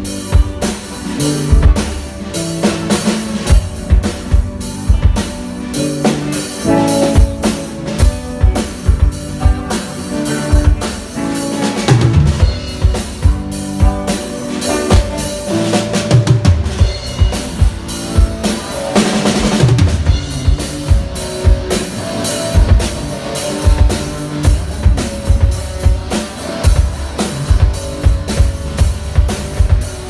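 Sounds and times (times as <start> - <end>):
drum kit playing steady beat: 0.0 - 30.0.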